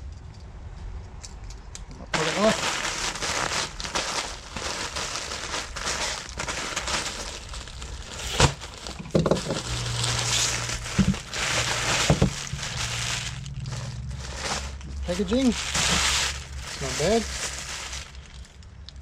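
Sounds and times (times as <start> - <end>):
packaging crinkling and rustling: 2.1 - 19.0.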